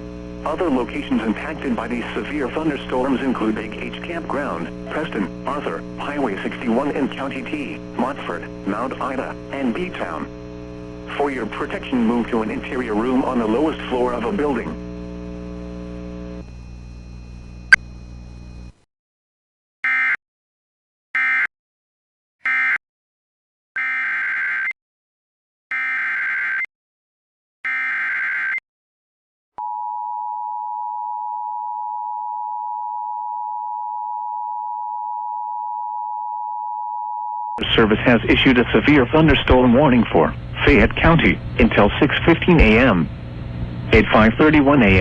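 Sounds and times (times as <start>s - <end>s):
faint broadcast hum: 0.0s - 18.7s, 37.6s - 45.0s.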